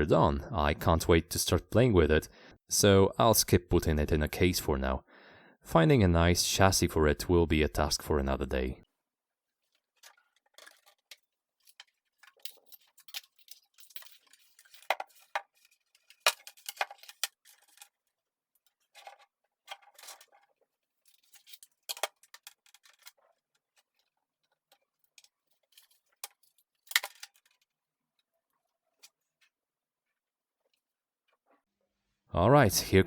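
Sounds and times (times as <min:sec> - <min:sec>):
computer parts clicking and clattering: 0:10.0 - 0:18.0, 0:18.7 - 0:27.7.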